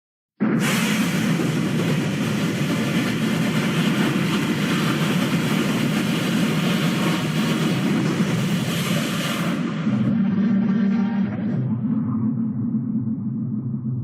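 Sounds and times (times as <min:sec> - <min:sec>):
loud rumbling mechanical noise: 0:00.4 - 0:14.0.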